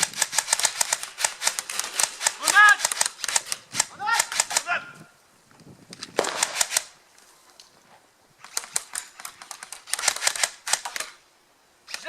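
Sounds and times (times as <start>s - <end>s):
airsoft guns firing: 0.0s - 4.7s, 6.1s - 7.0s, 8.4s - 11.2s.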